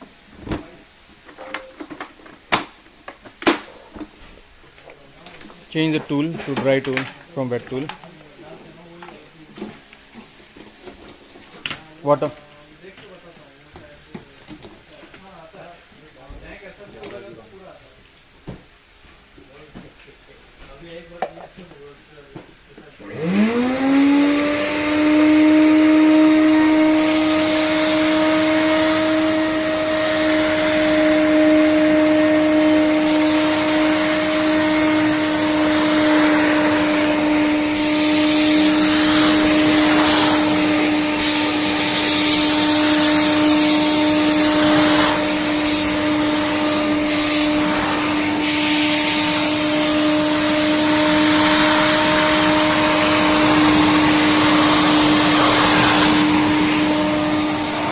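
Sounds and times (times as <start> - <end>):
vacuum cleaner motor hum: 23.0 - 57.9
vacuum sucking up water: 23.2 - 57.9.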